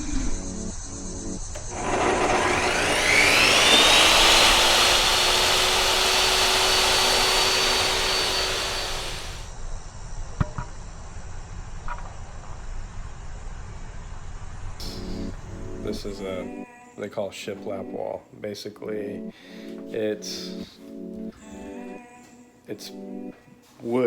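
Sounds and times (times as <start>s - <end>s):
electric motor whining: 1.5s - 9.5s.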